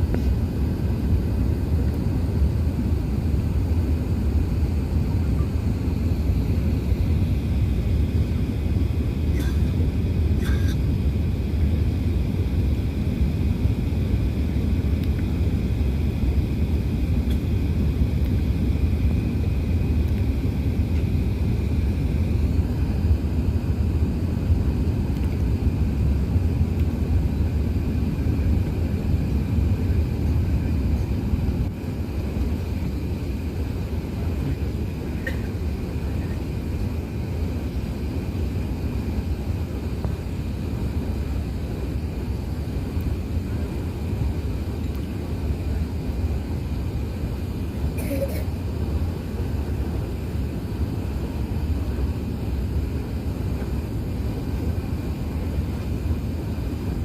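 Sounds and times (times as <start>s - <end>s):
airplane cabin engine rumble: 0.0s - 57.0s.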